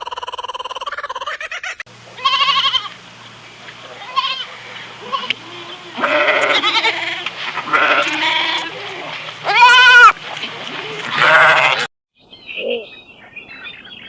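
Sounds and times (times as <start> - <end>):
goats bleating: 2.2 - 3.0, 3.9 - 11.9.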